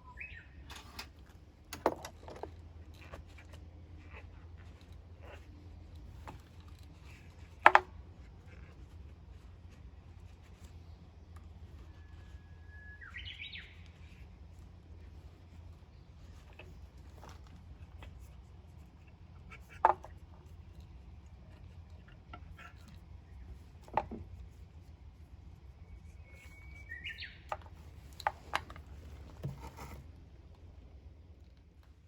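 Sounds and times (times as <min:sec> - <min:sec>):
bird-like chirp: 0:00.0 - 0:00.7, 0:11.8 - 0:14.2, 0:25.8 - 0:27.5.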